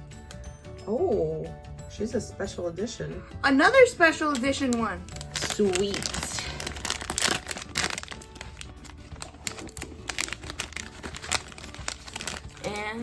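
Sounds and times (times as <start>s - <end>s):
plastic packaging crinkling: 4.0s - 13.0s.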